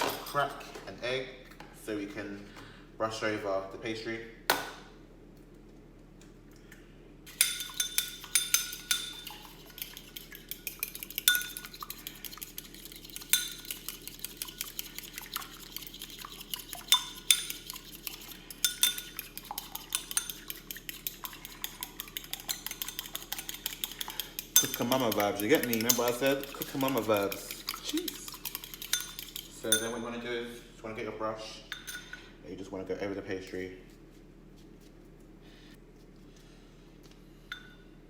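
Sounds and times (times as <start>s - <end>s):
fork clinking against a bowl: 7.3s - 30.1s.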